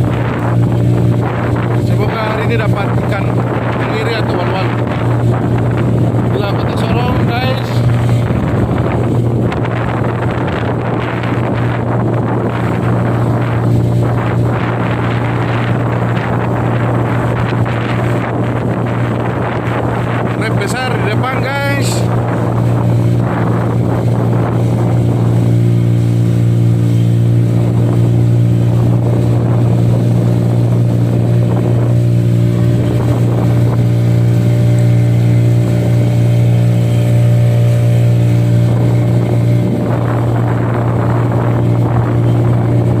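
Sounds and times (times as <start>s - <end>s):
boat motor droning: 0.0s - 43.0s.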